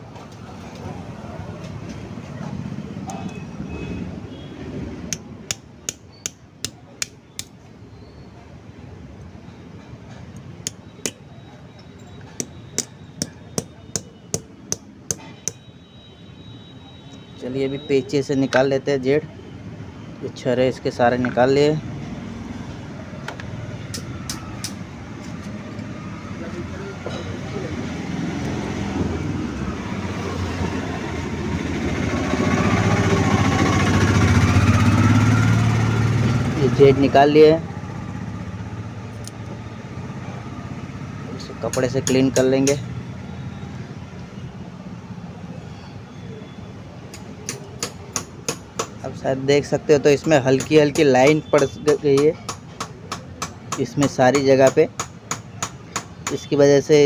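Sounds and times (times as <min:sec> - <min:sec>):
hammer clanking on metal: 0:12.4 - 0:15.6.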